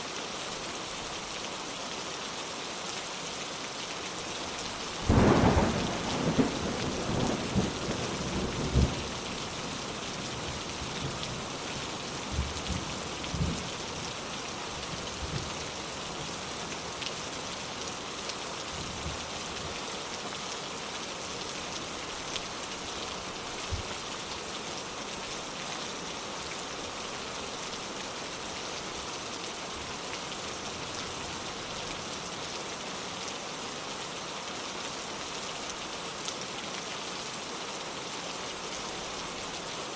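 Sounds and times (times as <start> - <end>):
heavy rain falling: 0.2 - 39.9.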